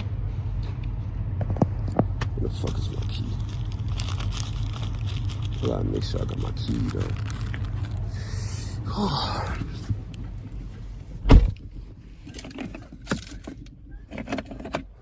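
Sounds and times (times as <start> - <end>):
low rumble: 0.0 - 12.0
rustling: 2.6 - 8.6
car door shutting: 11.2 - 11.7.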